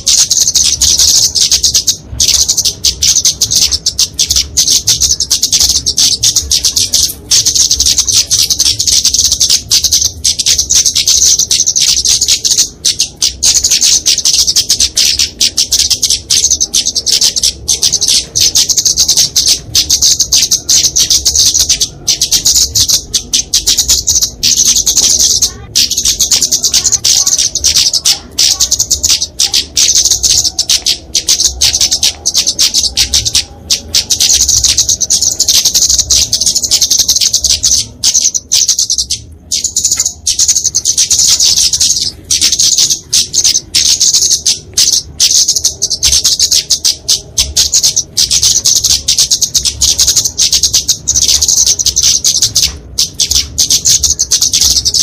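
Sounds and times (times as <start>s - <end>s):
bird giving rapid high chips: 0.0s - 55.0s.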